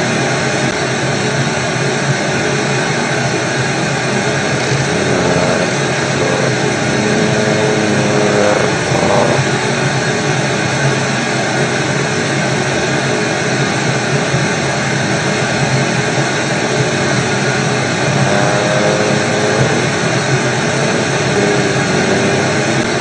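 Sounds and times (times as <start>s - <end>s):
radio static hiss: 4.6s - 9.4s.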